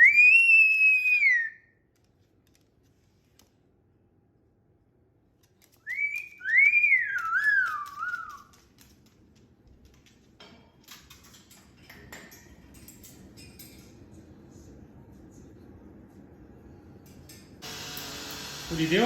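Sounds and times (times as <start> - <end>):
faint clicking and scratching: 5.4 - 13.8
cockatoo whistling: 5.8 - 8.5.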